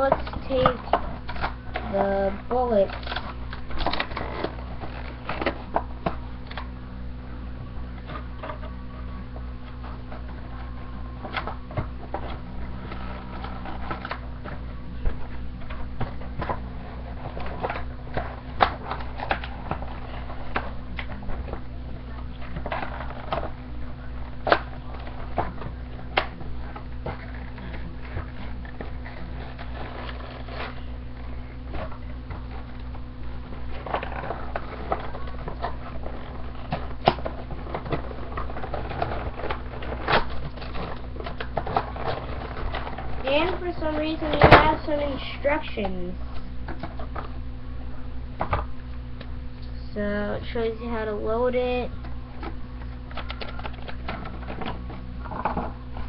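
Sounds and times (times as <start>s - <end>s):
low electrical hum: 0.0s - 56.0s
toy packaging rustling and crinkling: 27.2s - 32.7s, 33.7s - 45.6s.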